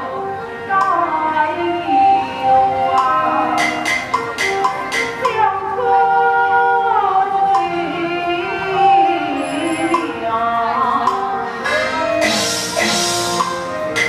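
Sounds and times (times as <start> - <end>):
opera singing with sliding notes: 0.0 - 4.1, 5.1 - 13.5
sharp percussion clicks: 3.0 - 5.4.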